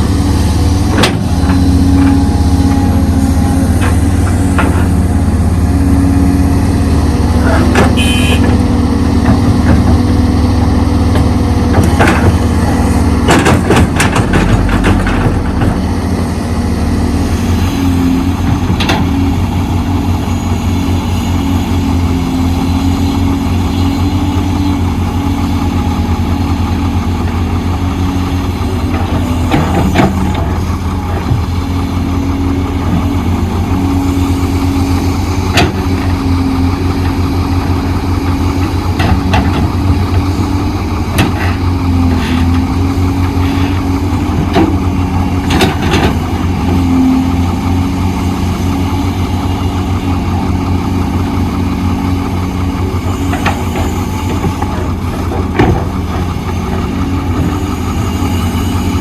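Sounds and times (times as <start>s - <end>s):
diesel machinery engine throbbing: 0.0s - 59.0s
metal clanks and knocks: 0.8s - 5.4s, 11.0s - 16.0s, 36.9s - 46.9s, 53.2s - 57.6s.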